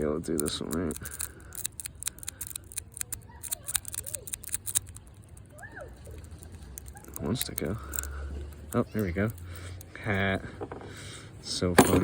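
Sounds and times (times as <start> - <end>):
lock pick raking clicking: 0.0 - 5.5, 6.2 - 9.9.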